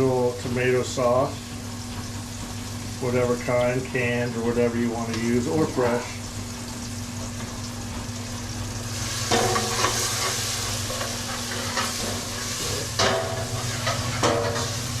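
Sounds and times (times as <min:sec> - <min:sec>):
vegetables sizzling in oil: 0:00.0 - 0:15.0
utensil scraping a pan: 0:09.3 - 0:14.9.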